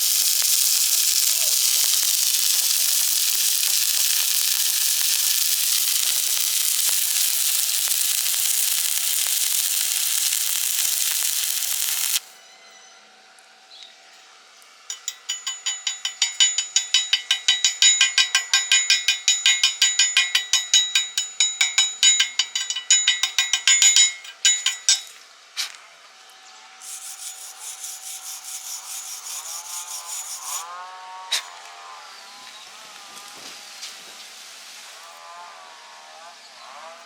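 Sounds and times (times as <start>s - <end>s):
steady hiss: 0.0s - 12.4s, 14.9s - 25.2s
metallic scraping strokes: 14.9s - 25.2s, 26.8s - 31.6s.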